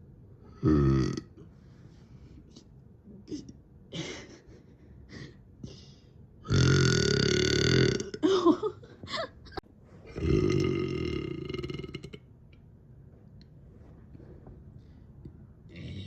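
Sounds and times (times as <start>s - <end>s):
person burping: 0.6s - 1.4s, 6.5s - 8.7s, 10.1s - 12.3s.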